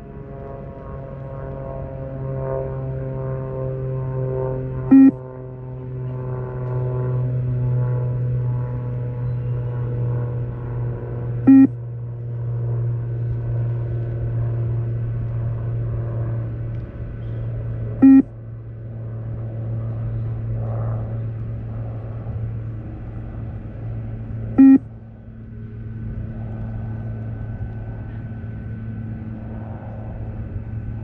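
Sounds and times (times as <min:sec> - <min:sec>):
steady low hum: 0:00.0 - 0:31.0
short electronic beeps: 0:04.9 - 0:05.2, 0:11.5 - 0:11.8, 0:18.0 - 0:18.3, 0:24.6 - 0:24.8.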